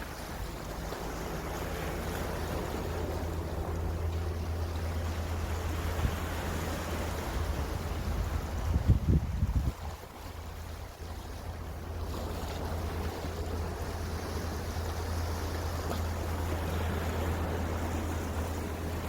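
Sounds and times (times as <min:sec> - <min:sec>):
sea waves: 0:00.0 - 0:19.0
wind rushing over microphone: 0:07.4 - 0:10.0.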